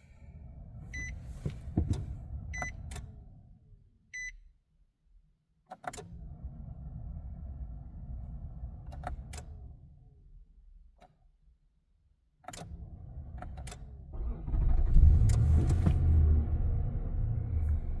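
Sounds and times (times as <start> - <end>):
loud low rumble: 14.2 - 18.0.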